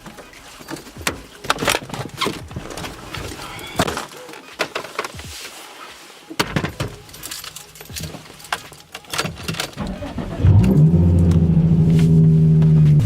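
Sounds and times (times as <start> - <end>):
metallic clicks and jingling: 6.8 - 9.8.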